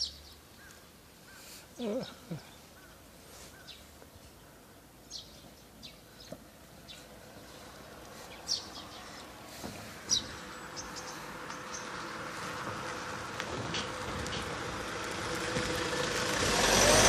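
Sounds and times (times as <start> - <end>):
high bird chirps: 10.1 - 12.0.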